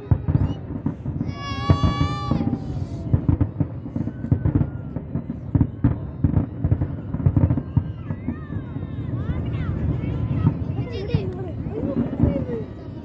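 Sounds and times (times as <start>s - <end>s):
firework whistle: 0.0s - 5.1s
fireworks bangs and crackles: 0.0s - 13.0s.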